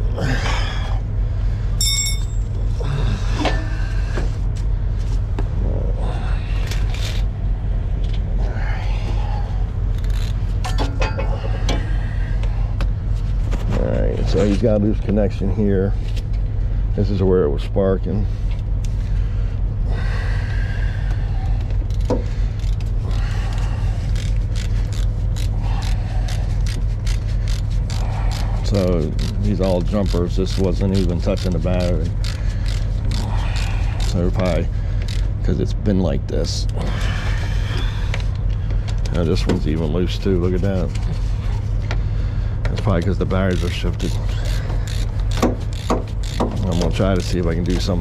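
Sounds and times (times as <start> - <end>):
engine idling: 0.0 - 48.0
ringing metallic clink: 1.8 - 2.5
tools clicking on metal: 21.9 - 35.3, 42.8 - 47.9.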